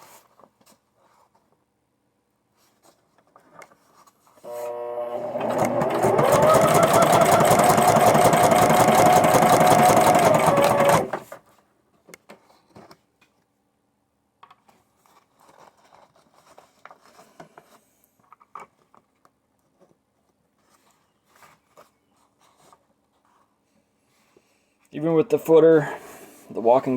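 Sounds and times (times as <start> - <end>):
faint clicks and rustles: 2.5 - 4.4, 14.4 - 24.9
sewing machine stitching: 4.4 - 11.4.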